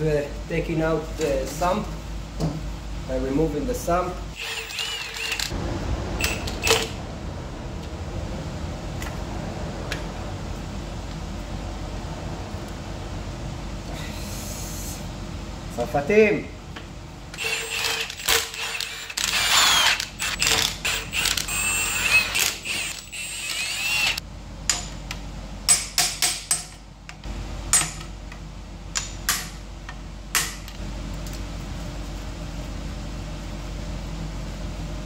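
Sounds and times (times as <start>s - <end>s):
ratcheting and metal scraping: 17.4s - 24.2s.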